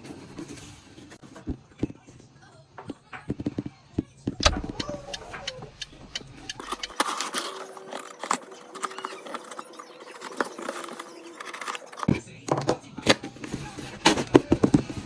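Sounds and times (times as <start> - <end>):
packaging crinkling and rustling: 6.5 - 12.1.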